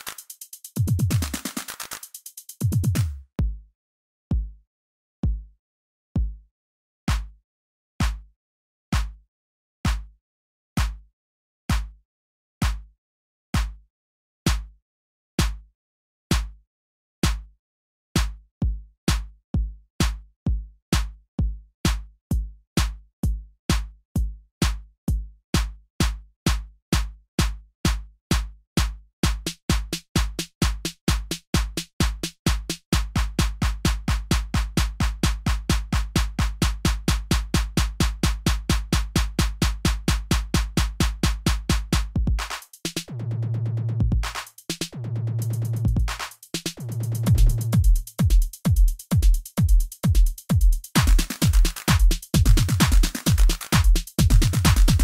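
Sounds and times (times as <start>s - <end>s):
electronic dance music: 0.0s - 2.3s, 45.5s - 55.0s
drum-machine kick drum: 0.0s - 3.7s, 4.3s - 4.6s, 5.2s - 5.6s, 6.2s - 6.5s, 7.1s - 7.4s, 8.0s - 8.3s, 9.0s - 9.2s, 9.9s - 10.2s, 10.8s - 11.1s, 11.7s - 12.0s, 12.6s - 12.9s, 13.6s - 13.8s, 14.5s - 14.8s, 15.4s - 15.7s, 16.3s - 16.6s, 17.2s - 17.5s, 18.2s - 55.0s
held bass stabs: 46.8s - 55.0s.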